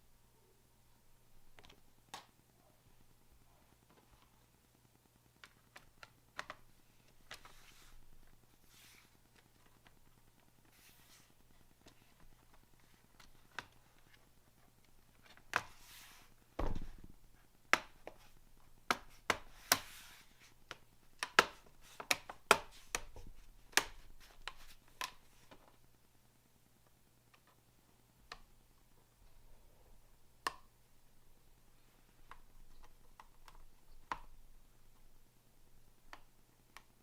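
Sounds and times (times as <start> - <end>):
laptop parts clicking and tapping: 5.4 - 7.5, 20.6 - 25.7, 32.2 - 34.4, 36.1 - 37.0.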